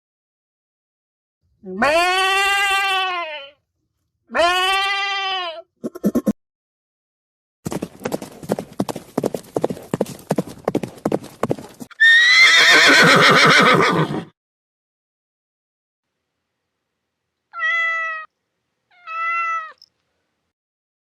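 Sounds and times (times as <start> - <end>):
horse hooves clip-clopping: 7.7 - 11.9
horse whinny: 11.9 - 14.3.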